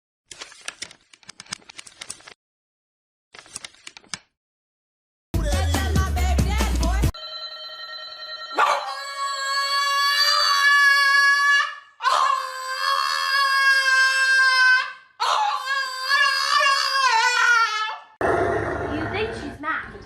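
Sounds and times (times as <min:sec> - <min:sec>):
dog howling: 0:08.6 - 0:17.6.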